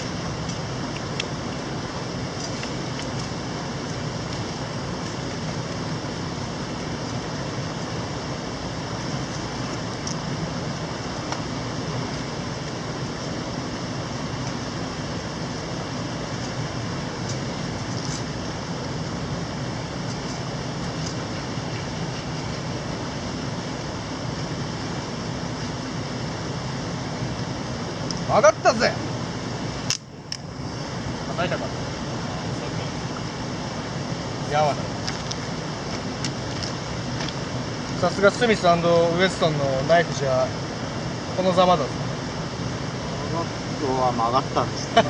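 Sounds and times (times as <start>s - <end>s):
stream flowing over rocks: 0.0s - 26.0s.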